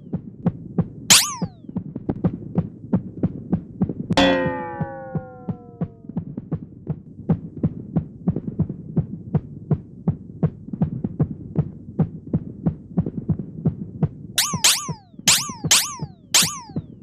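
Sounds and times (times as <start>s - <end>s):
low steady hum: 4.2s - 6.4s.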